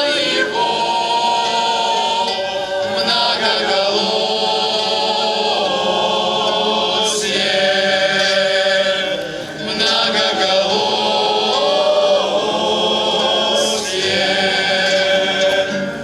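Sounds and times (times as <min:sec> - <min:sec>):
choir singing: 0:00.0 - 0:16.0.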